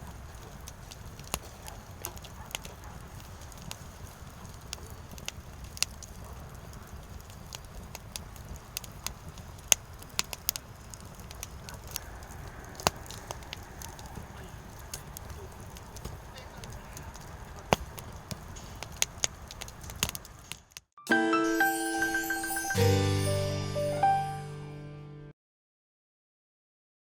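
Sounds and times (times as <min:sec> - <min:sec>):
firewood crackling and popping: 0:00.0 - 0:20.9.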